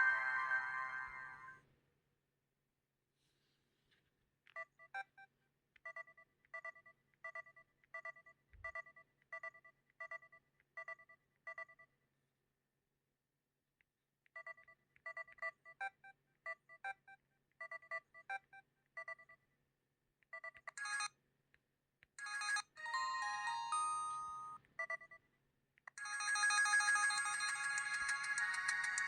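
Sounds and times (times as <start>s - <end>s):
mobile phone ringtone beeping: 0.0s - 1.6s, 22.2s - 25.0s, 26.0s - 29.0s.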